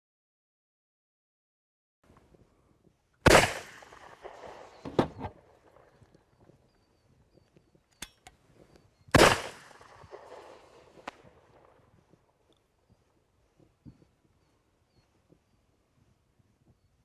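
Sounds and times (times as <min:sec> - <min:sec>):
flare pistol shot: 0:03.3 - 0:05.3, 0:09.1 - 0:11.6
sharp clicks: 0:07.4 - 0:08.4.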